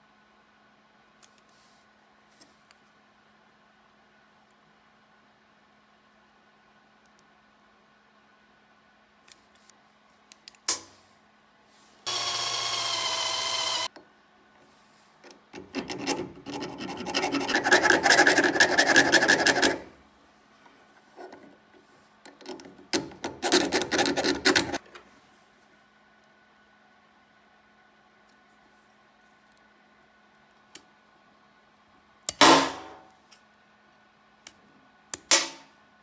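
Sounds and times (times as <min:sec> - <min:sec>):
file rasping on metal: 0:15.6 - 0:20.0, 0:23.3 - 0:24.8.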